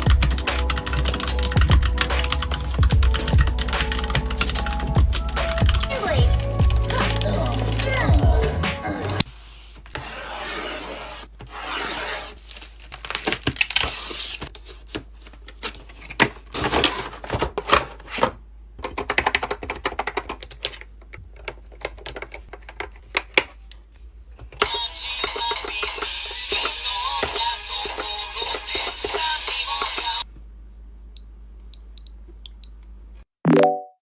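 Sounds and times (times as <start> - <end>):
keyboard keys clicking: 0.0 - 7.8.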